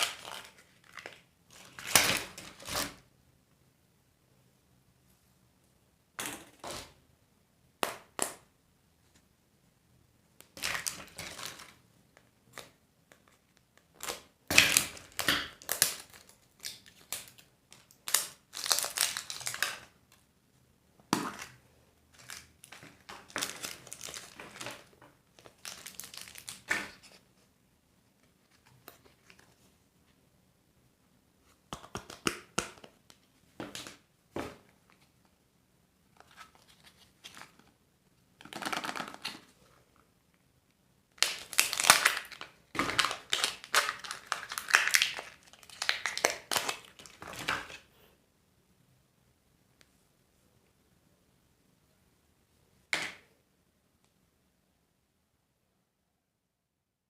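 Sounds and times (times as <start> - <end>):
wrappers crinkling and tearing: 15.0 - 19.9, 23.3 - 27.0, 41.2 - 47.7.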